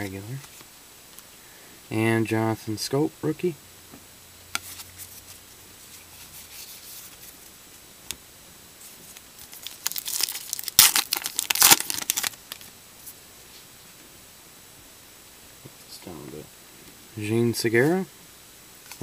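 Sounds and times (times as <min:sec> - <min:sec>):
card pack wrapper ripping: 0:09.4 - 0:12.7.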